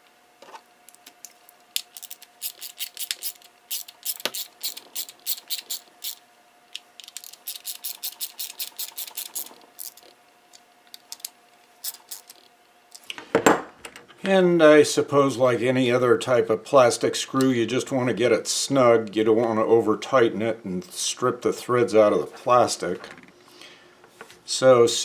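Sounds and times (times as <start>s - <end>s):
screwdriver driving screws clicks: 1.8s - 6.2s, 6.8s - 10.0s.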